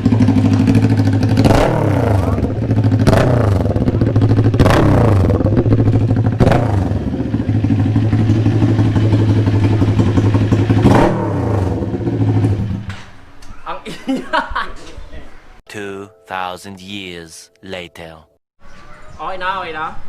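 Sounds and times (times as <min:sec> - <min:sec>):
motorcycle engine idling: 0:00.0 - 0:10.9.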